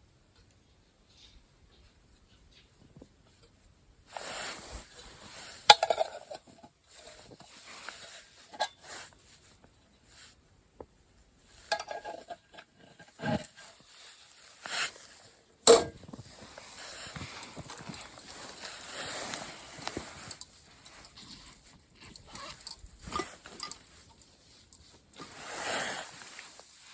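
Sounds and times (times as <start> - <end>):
objects clinking and knocking: 15.7 - 24.9.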